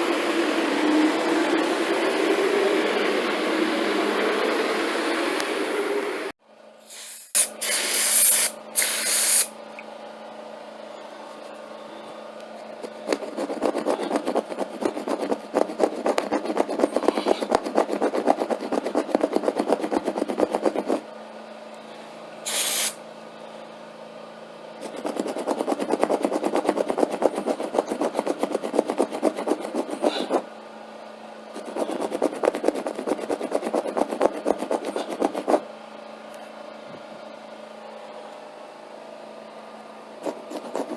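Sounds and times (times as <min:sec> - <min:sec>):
machine hum: 0:00.0 - 0:06.4, 0:09.4 - 0:40.9
short sharp hisses: 0:06.8 - 0:09.6, 0:22.4 - 0:23.0
rasping scrubbing over carpet: 0:12.6 - 0:21.0, 0:24.8 - 0:30.4, 0:31.6 - 0:35.6, 0:40.2 - 0:40.9.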